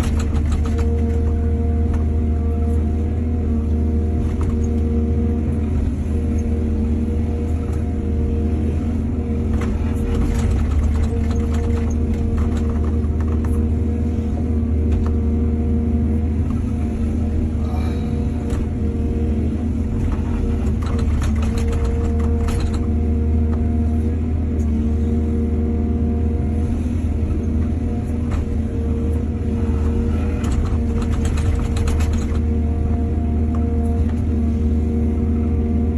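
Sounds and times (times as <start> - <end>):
light knocks and clatter: 0.0 - 1.3, 9.5 - 13.7, 20.0 - 22.9, 29.8 - 32.5
excavator diesel engine running: 0.0 - 35.9.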